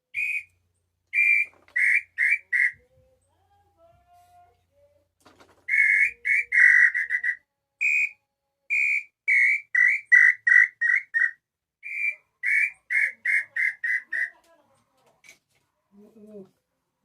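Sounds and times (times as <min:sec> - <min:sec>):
bird call whistle notes: 0:00.1 - 0:00.5, 0:01.2 - 0:02.8, 0:05.7 - 0:14.3.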